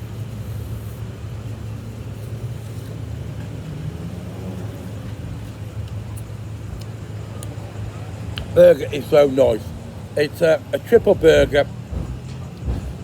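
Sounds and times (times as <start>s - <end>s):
low mechanical hum: 0.0s - 13.0s
background rush: 6.5s - 13.0s.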